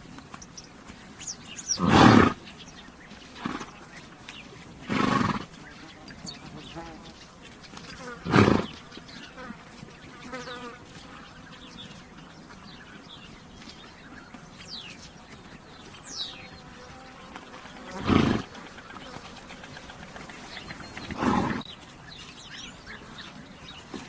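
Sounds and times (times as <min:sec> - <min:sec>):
high falling bird calls: 0:00.0 - 0:24.0
flies buzzing: 0:01.2 - 0:12.4, 0:14.2 - 0:24.0
horse snorting: 0:01.6 - 0:02.5, 0:03.3 - 0:03.8, 0:04.7 - 0:05.7, 0:08.1 - 0:08.8, 0:17.7 - 0:21.8.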